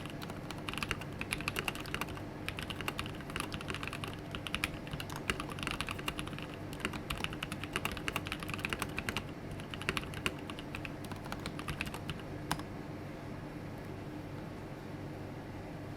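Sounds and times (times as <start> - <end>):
mechanical keyboard typing: 0.0 - 12.7.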